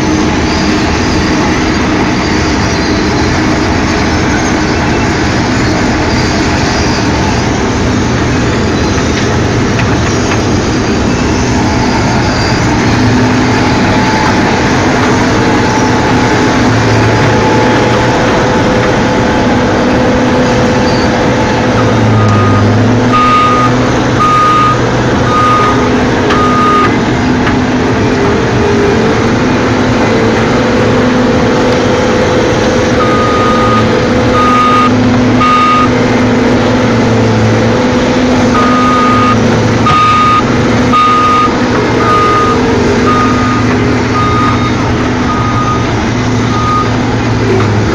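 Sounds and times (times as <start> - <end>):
heavy diesel machinery running: 0.0 - 47.9
backup alarm beeping: 21.8 - 27.0, 32.9 - 36.0, 38.5 - 47.0.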